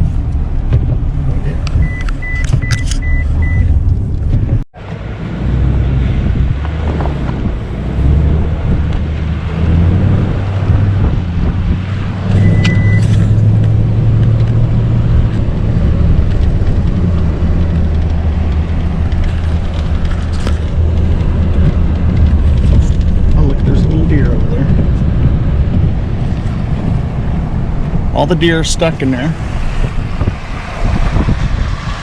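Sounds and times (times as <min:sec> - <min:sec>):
car engine and road drone: 0:00.0 - 0:32.0
short high beep: 0:12.4 - 0:13.0.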